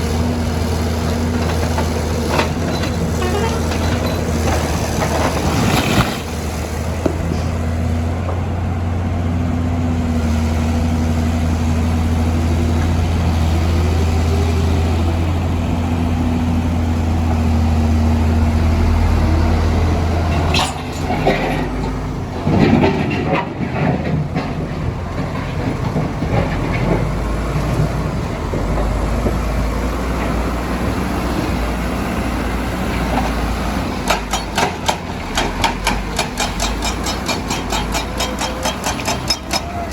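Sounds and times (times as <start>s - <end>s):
diesel machine engine running: 0.0s - 39.9s
knocks and clatter: 1.4s - 6.2s, 18.4s - 30.4s, 34.0s - 39.9s
deep engine rumble: 6.6s - 34.0s.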